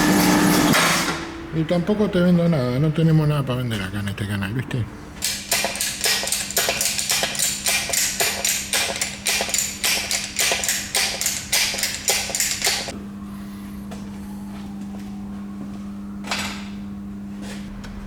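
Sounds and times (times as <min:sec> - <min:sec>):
steady low hum: 0:12.8 - 0:18.0.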